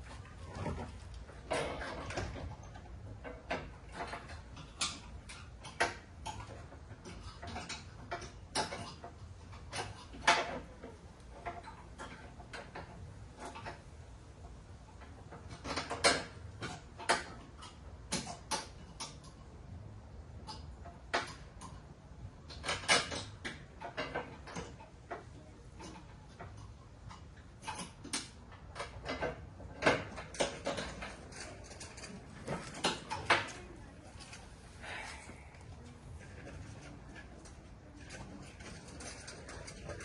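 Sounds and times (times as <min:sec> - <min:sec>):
tools clicking and knocking: 0:00.0 - 0:13.9, 0:14.8 - 0:19.4, 0:22.5 - 0:34.5.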